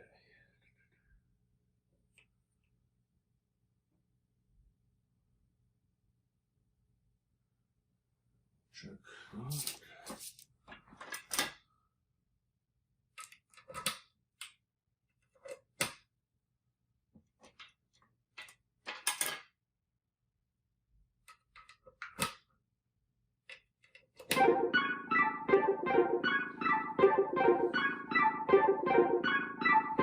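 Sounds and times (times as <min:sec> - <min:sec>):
synthesizer sequenced notes: 0:24.3 - 0:30.0.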